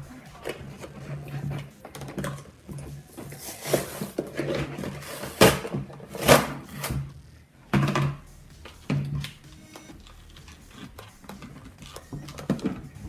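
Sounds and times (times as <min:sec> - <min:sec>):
scraping and rustling: 0:00.0 - 0:07.1
toy packaging being opened: 0:09.9 - 0:12.5.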